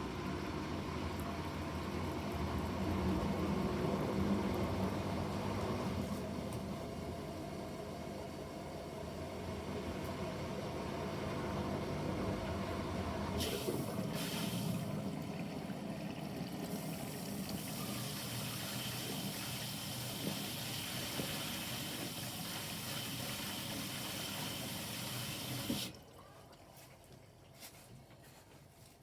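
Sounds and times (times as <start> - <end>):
water rushing into washing machine: 11.8 - 27.9.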